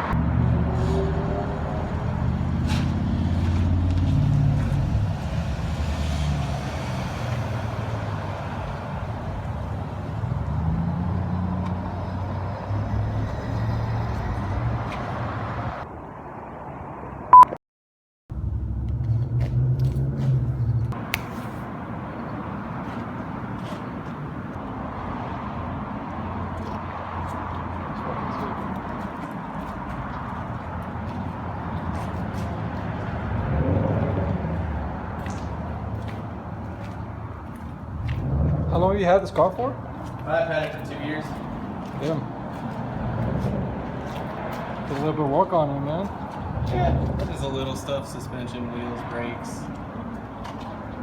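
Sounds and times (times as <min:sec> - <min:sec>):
car engine and road noise: 0:00.0 - 0:17.4, 0:18.3 - 0:51.0
brief beep: 0:17.3 - 0:17.6.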